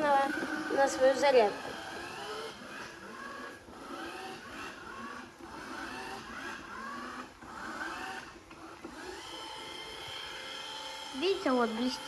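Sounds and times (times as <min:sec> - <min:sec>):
robot vacuum cleaner whirring: 0:00.0 - 0:12.0.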